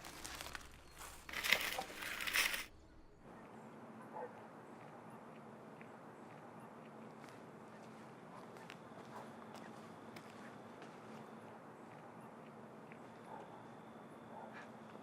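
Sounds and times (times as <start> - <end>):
rustling crunching noise: 0.0 - 2.7.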